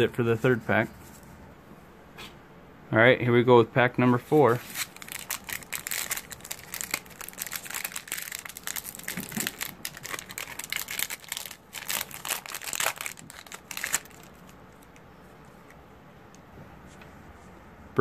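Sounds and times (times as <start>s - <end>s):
foil wrapper crinkling: 4.7s - 15.0s.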